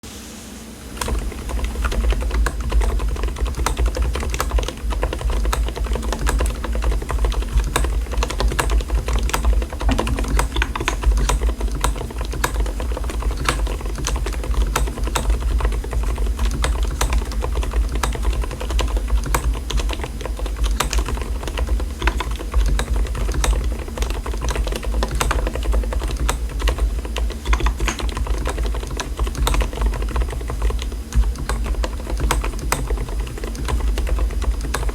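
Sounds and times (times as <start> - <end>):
keyboard typing: 0.9 - 34.9
low hum: 9.8 - 11.2.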